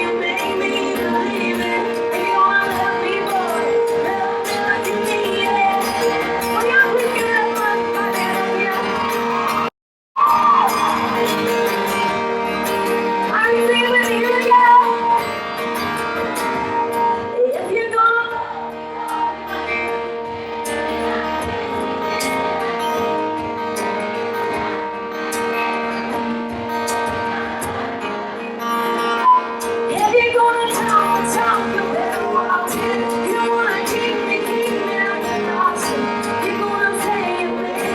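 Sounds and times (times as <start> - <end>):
woman singing: 0.0 - 12.2, 12.8 - 15.5, 16.4 - 20.0, 29.2 - 37.9
live band playing chords: 0.0 - 37.9.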